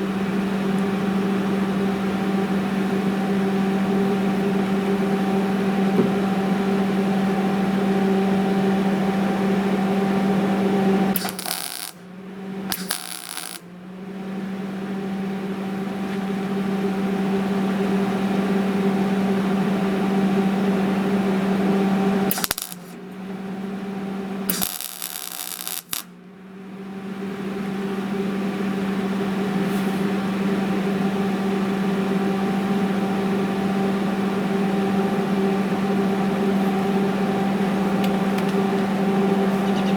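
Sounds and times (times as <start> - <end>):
steady hum: 0.0 - 39.9
welding arc crackle: 11.2 - 12.1, 12.7 - 13.7, 22.3 - 23.0, 24.5 - 26.2.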